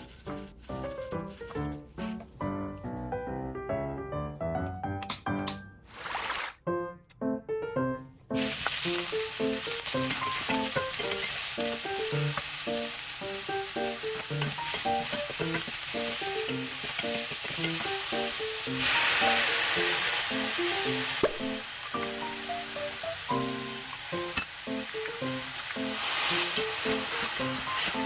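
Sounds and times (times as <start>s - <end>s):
food sizzling in a pan: 8.4s - 28.0s.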